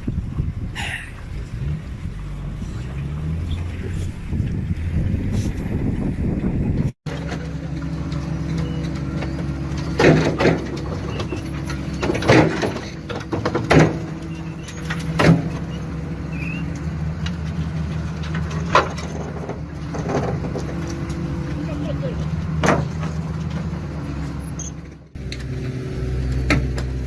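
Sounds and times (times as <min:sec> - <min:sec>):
heavy machine engine running: 0:00.3 - 0:27.0
loud knocks: 0:09.9 - 0:14.2.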